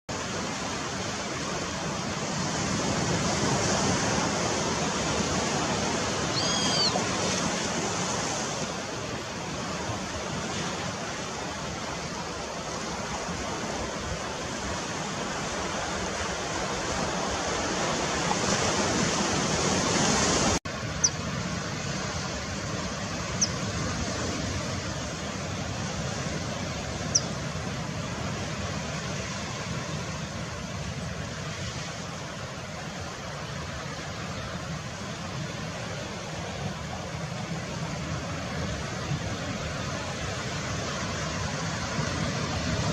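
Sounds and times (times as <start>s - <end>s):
bird call: 6.2s - 7.1s, 23.3s - 23.6s, 27.1s - 27.4s
high bird chirps: 6.3s - 7.0s, 27.1s - 27.3s.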